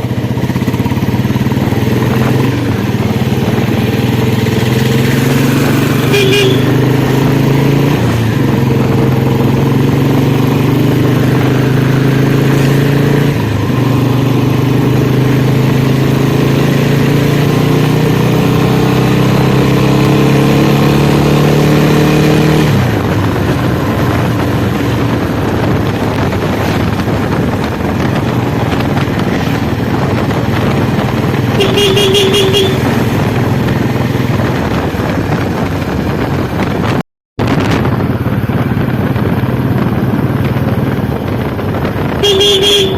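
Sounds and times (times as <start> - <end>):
motorcycle engine running under load: 0.0 - 42.9
short horn beep: 6.0 - 7.2, 31.5 - 33.0, 42.2 - 42.9.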